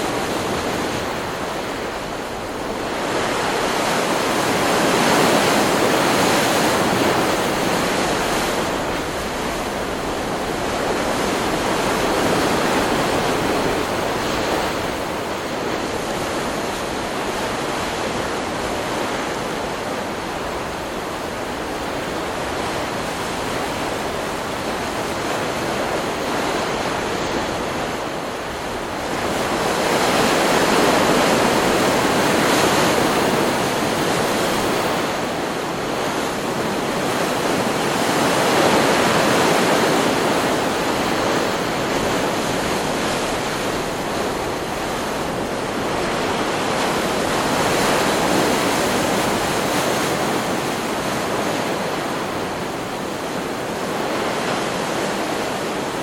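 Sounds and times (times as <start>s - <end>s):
waves breaking on beach: 0.0s - 56.0s.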